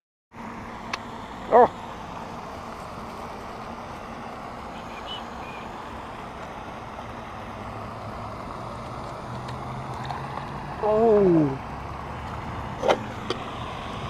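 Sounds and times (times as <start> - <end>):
outdoor background noise: 0.3 - 14.0.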